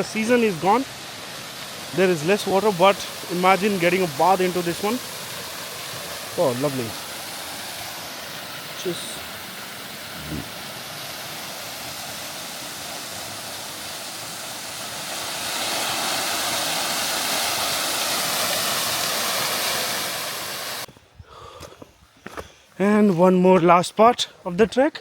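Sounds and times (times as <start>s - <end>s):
waterfall rushing: 0.0s - 20.9s.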